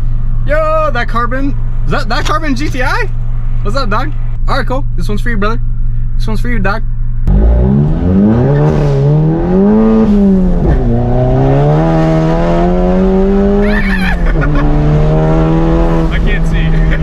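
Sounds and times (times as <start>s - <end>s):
car engine accelerating: 6.7s - 17.0s.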